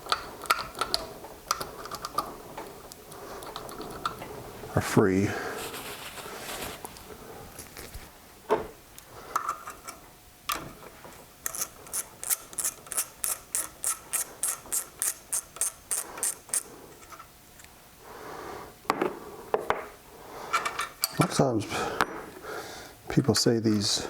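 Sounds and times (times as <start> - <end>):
ratchet wrench clicking: 11.4 - 16.7.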